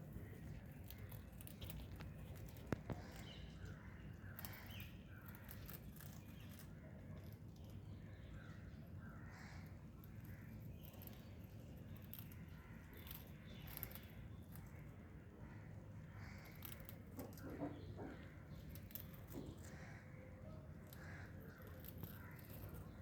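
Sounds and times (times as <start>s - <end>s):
small clicks: 0.8s - 3.4s.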